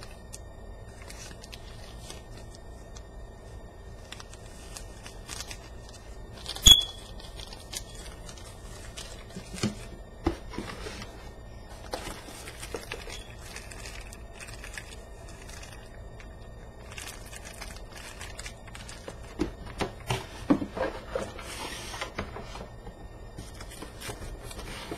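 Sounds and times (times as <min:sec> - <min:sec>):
packaging crinkling and rustling: 0:00.0 - 0:24.9.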